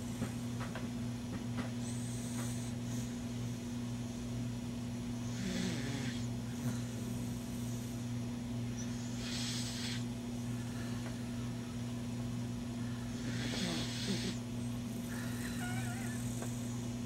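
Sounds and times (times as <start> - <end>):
dog snoring: 1.6 - 3.7, 5.2 - 11.8, 12.8 - 17.0.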